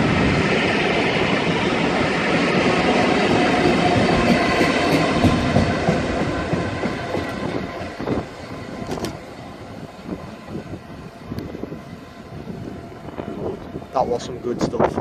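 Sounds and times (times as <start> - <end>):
train wheels clattering: 3.2 - 9.2.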